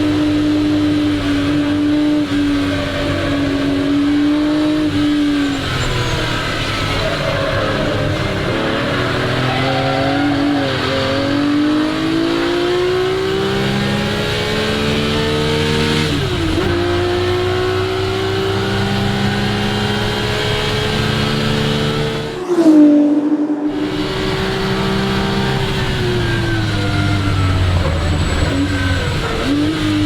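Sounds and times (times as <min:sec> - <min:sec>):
car engine revving hard: 0:00.0 - 0:30.0
engine burst on lift-off: 0:22.1 - 0:30.0.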